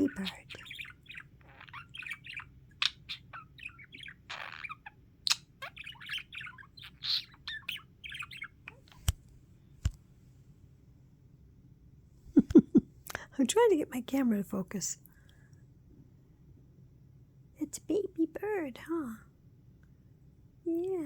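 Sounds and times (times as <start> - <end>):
budgerigar chirping: 0.0 - 9.1.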